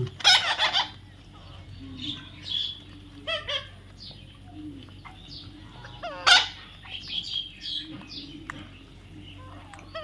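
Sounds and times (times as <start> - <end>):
parrot squawking and chirping: 0.2 - 1.0, 5.8 - 6.8.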